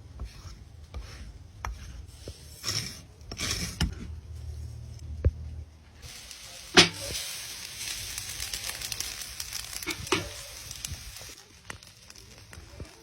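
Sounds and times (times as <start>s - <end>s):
food sizzling in a pan: 6.0s - 13.0s.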